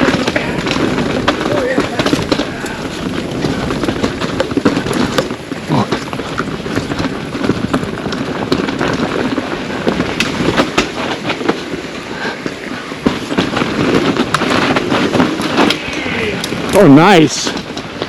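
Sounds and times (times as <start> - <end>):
bike clicking and rattling: 0.0 - 18.0
bike tyres crunching over dirt: 0.0 - 18.0.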